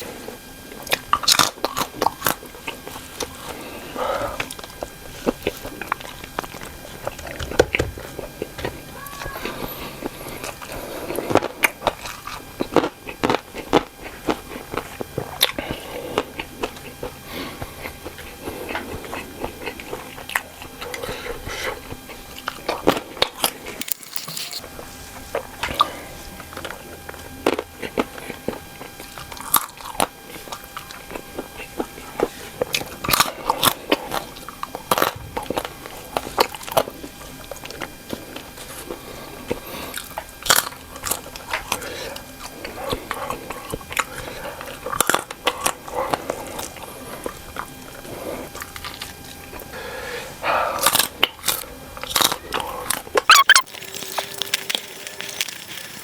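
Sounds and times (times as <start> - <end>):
mouth clicks: 53.3 - 53.7.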